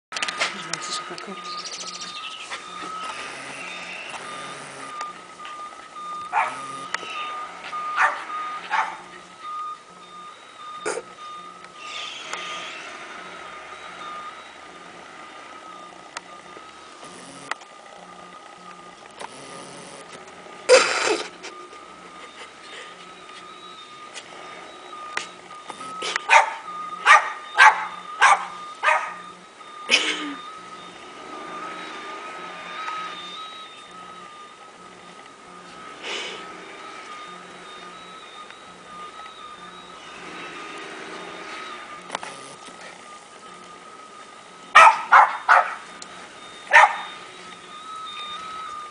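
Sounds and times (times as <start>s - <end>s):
steady high-pitched tone: 0.2s - 48.9s
small dog barking: 6.3s - 6.7s, 8.0s - 9.1s, 26.3s - 29.2s, 44.8s - 45.8s, 46.7s - 47.1s.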